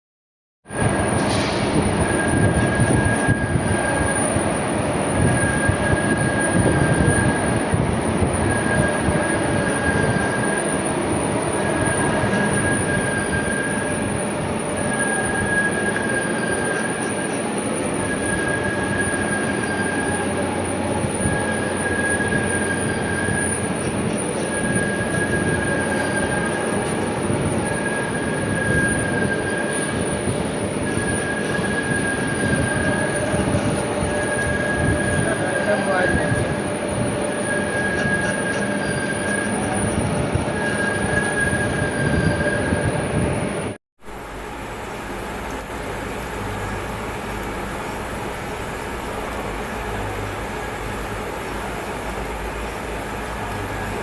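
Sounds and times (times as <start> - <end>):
lathe running: 1.8 - 42.8
cutting tool squealing: 14.8 - 36.6, 37.2 - 42.9.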